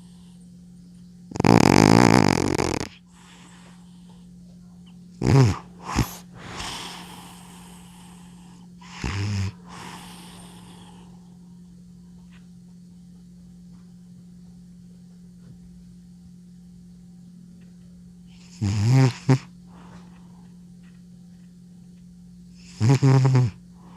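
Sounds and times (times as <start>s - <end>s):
cat snoring: 1.3s - 4.0s, 5.2s - 11.4s, 18.3s - 20.0s, 22.6s - 23.9s
cat snorting: 1.3s - 4.1s, 5.2s - 11.4s, 18.4s - 20.1s, 22.6s - 23.9s.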